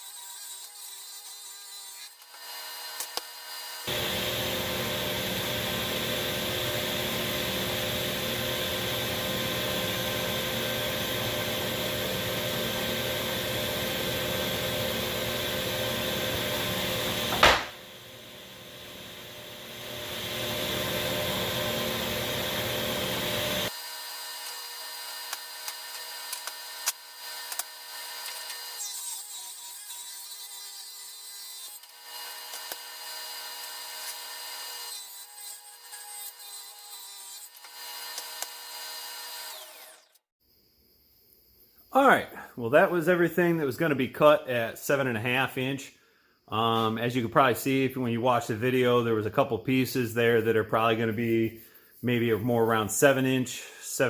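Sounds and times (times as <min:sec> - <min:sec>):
table saw ripping wood: 0:01.7 - 0:17.8, 0:19.2 - 0:40.2
sharp crack: 0:17.3 - 0:17.8.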